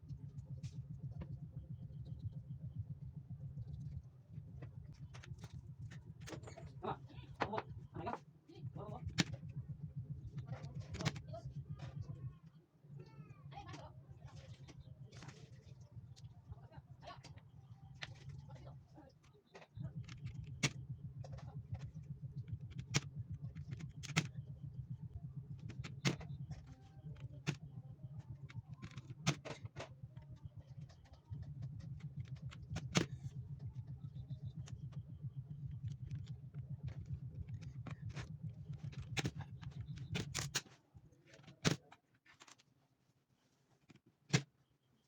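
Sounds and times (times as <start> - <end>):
steady low hum: 0.0 - 45.0
keyboard keys clicking: 19.7 - 24.5.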